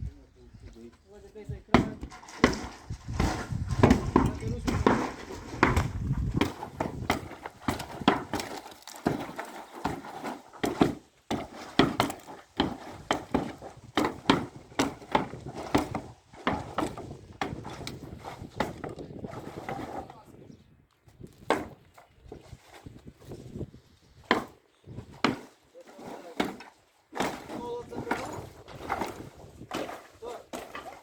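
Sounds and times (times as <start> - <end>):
sharp knocks and clatter of tools: 1.7 - 18.0.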